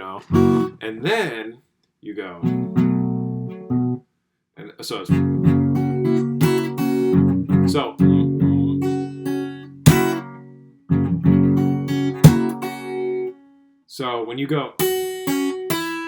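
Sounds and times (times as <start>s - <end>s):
fingerstyle acoustic guitar: 0.2s - 0.8s, 2.4s - 4.0s, 5.1s - 13.6s, 14.8s - 16.0s
percussive slaps on guitar strings: 9.9s - 10.3s, 12.2s - 12.7s.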